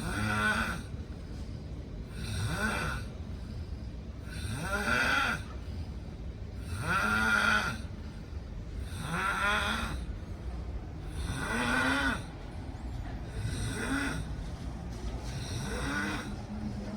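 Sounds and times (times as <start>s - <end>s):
loud snoring: 0.0s - 1.0s, 2.0s - 3.3s, 4.2s - 5.7s, 6.6s - 8.0s, 8.8s - 10.4s, 11.0s - 12.6s, 13.2s - 14.6s, 15.2s - 16.8s.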